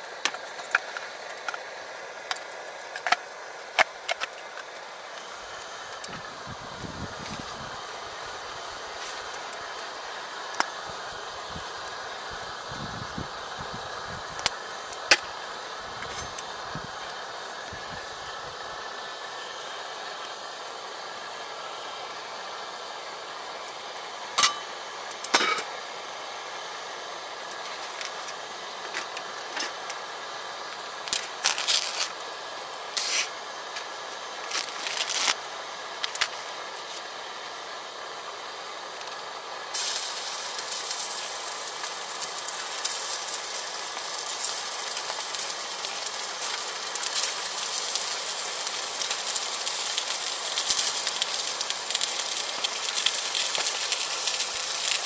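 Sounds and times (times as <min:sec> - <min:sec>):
fire crackles and knocks: 0:00.0 - 0:09.9, 0:12.9 - 0:18.3, 0:27.4 - 0:30.0, 0:30.6 - 0:32.3, 0:33.0 - 0:35.4, 0:36.0 - 0:37.1, 0:39.0 - 0:55.0
wood fire hissing: 0:00.0 - 0:55.0.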